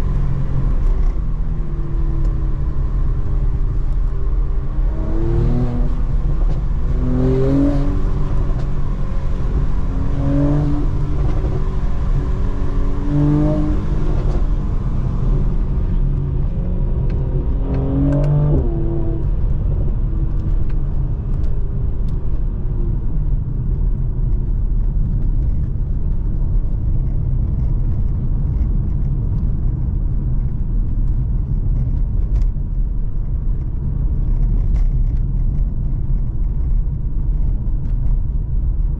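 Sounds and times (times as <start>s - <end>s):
car engine revving: 0.0s - 19.6s
road noise: 0.0s - 38.9s.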